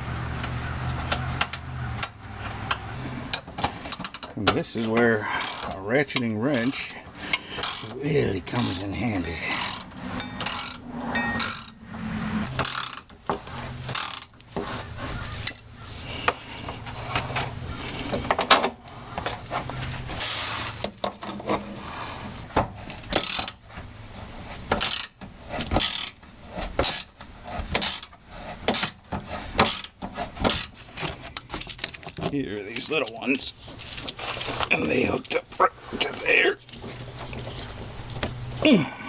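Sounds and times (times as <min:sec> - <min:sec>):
ratchet wrench clicking: 0:01.0 - 0:08.0, 0:08.6 - 0:11.8, 0:12.5 - 0:13.2, 0:13.8 - 0:14.4, 0:23.1 - 0:23.6, 0:24.8 - 0:25.2, 0:25.8 - 0:26.2.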